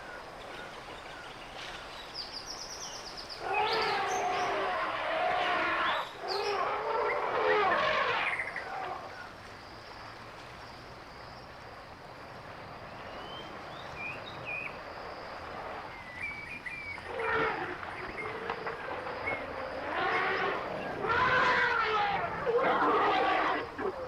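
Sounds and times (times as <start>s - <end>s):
steady outdoor hiss: 0.0s - 24.0s
pitched animal call: 17.1s - 24.0s.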